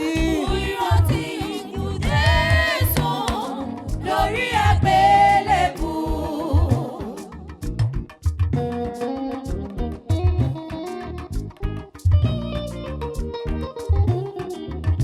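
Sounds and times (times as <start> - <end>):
band with steady bass beat: 0.0 - 6.9, 7.5 - 15.0
person singing gospel: 0.0 - 7.5.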